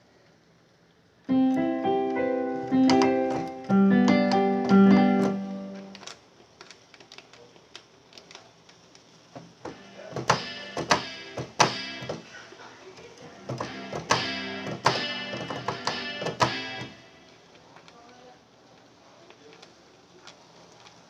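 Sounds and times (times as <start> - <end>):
synthesizer piano chords: 1.3 - 6.1, 9.7 - 12.4, 13.4 - 17.1
faint scattered clicks: 17.5 - 21.0.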